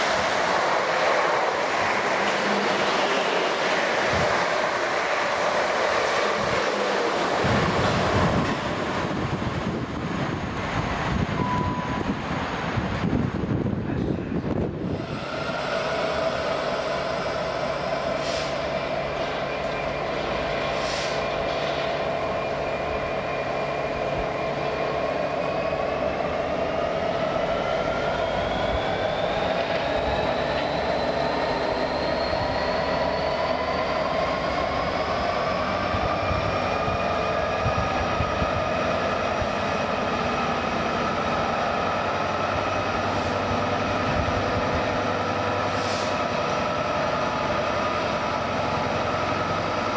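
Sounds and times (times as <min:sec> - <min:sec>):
train running with steady drone: 0:00.0 - 0:49.9.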